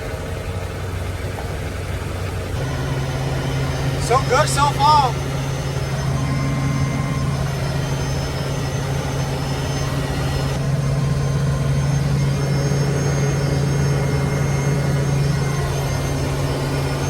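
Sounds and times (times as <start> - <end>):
diesel engine droning: 0.0 - 17.0.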